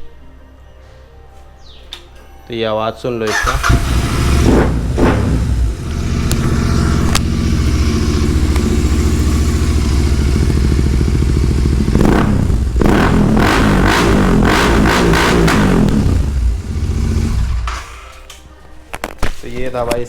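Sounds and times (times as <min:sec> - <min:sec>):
motorcycle engine idling and revving: 0:03.3 - 0:18.0.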